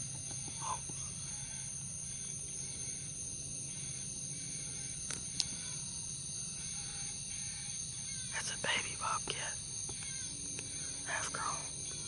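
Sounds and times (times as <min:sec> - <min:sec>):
insects trilling: 0:00.0 - 0:12.0.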